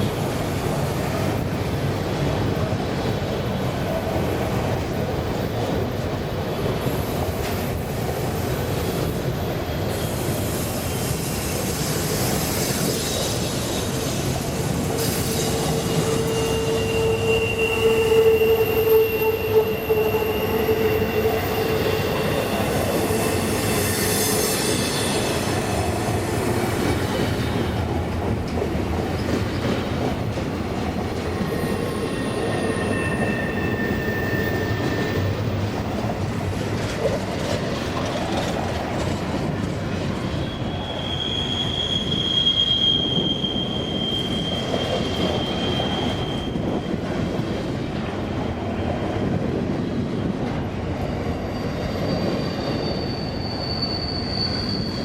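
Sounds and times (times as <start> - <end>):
freight train cars rumbling: 0.0 - 55.0
train wheels squealing: 6.6 - 27.9, 31.0 - 47.7, 50.8 - 55.0.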